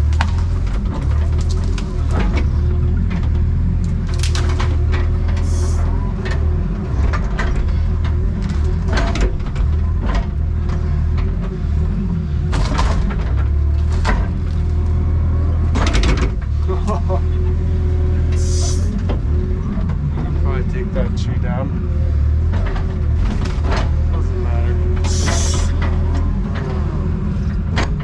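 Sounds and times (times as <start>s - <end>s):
trees cracking and breaking: 0.0s - 11.7s
excavator diesel engine: 0.0s - 28.0s.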